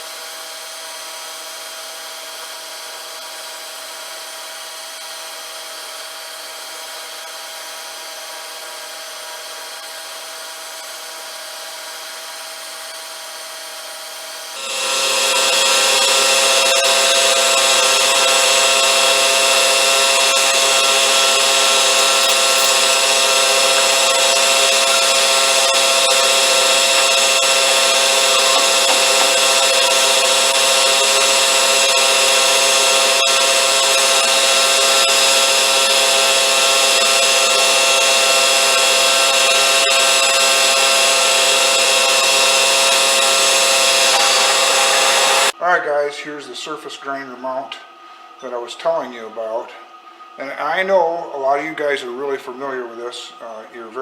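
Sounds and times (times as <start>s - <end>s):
machine-shop tool running: 14.6s - 45.5s.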